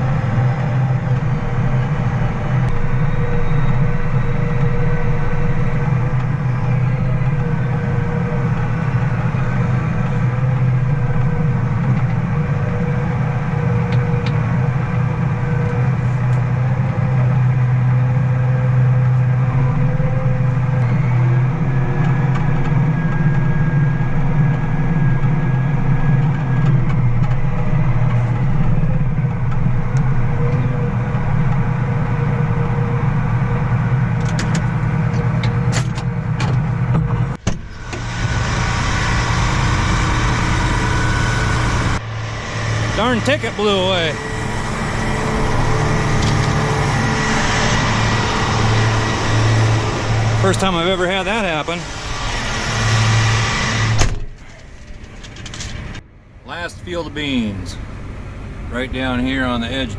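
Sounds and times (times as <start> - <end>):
farm vehicle engine droning: 0.0 - 59.9
bright hissy engine: 37.5 - 54.7, 56.4 - 59.9.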